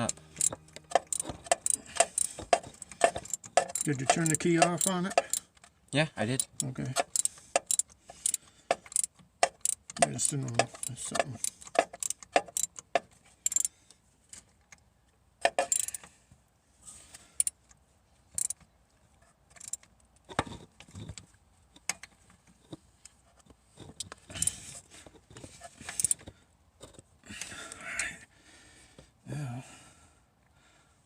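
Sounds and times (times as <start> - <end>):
metallic clinks and rattles: 0.0 - 13.7, 15.4 - 16.1, 18.3 - 18.6, 19.5 - 19.9, 25.8 - 26.3.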